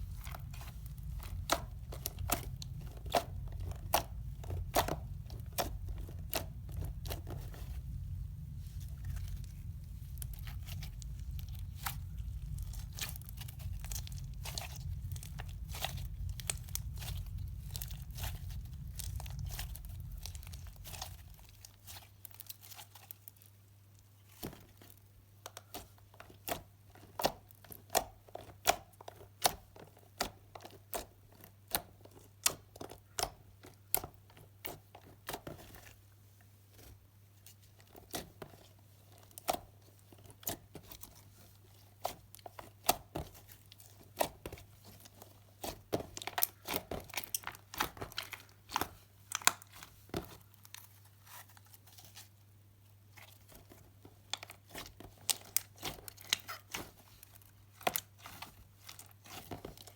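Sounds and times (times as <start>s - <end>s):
slime popping and crackling: 0.0s - 23.5s, 42.0s - 50.9s
faint low hum: 0.0s - 24.6s.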